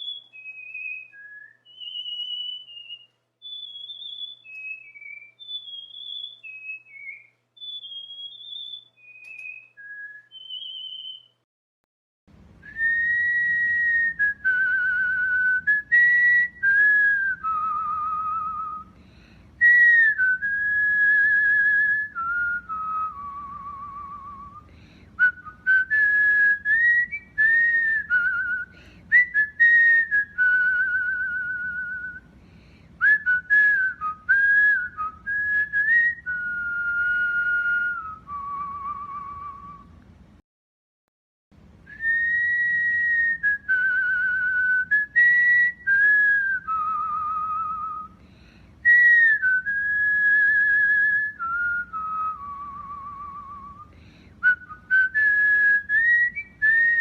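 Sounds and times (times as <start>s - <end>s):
room hiss: 0.0s - 11.3s, 12.3s - 40.4s, 41.6s - 57.0s
cockatiel whistling: 0.0s - 11.4s, 19.6s - 32.3s, 33.0s - 39.9s, 41.9s - 48.2s, 48.8s - 57.0s.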